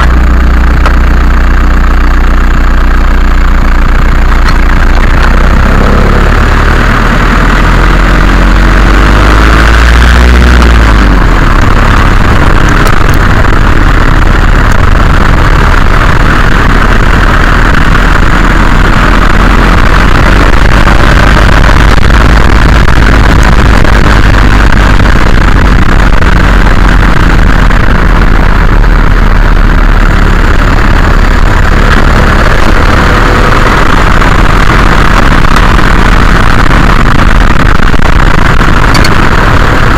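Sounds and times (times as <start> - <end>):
diesel car engine: 0.0 - 39.9
road noise: 0.0 - 39.9
suspension knocking and rattling: 2.9 - 39.9.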